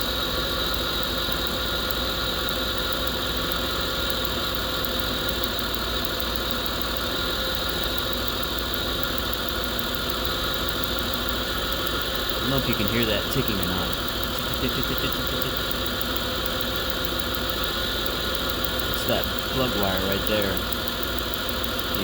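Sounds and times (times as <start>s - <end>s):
car engine idling with misfire: 0.0s - 22.0s
fast regular ticking of arcing: 0.0s - 22.0s.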